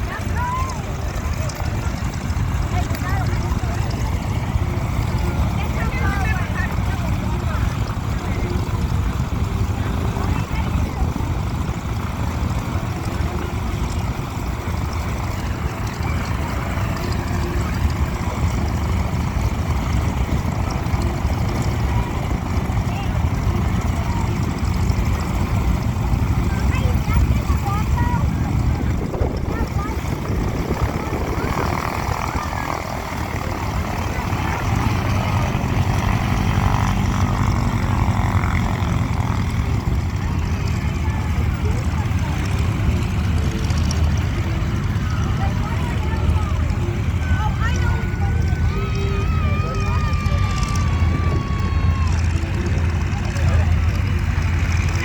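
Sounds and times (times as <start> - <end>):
radial piston engines rumbling: 0.0 - 55.0.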